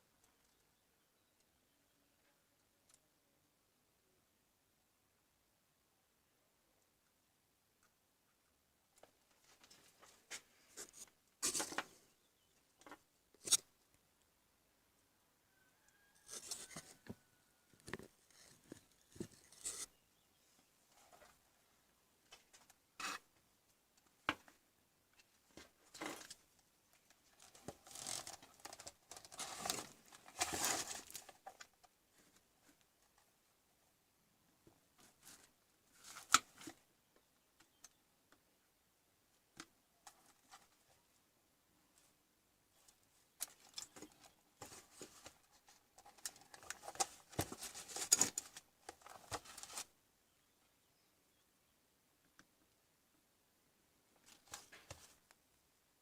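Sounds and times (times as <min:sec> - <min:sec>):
rustling and scraping: 0:09.0 - 0:12.1, 0:16.1 - 0:20.0, 0:20.8 - 0:21.5, 0:22.2 - 0:23.4, 0:25.2 - 0:33.3, 0:42.7 - 0:50.0, 0:54.2 - 0:55.3.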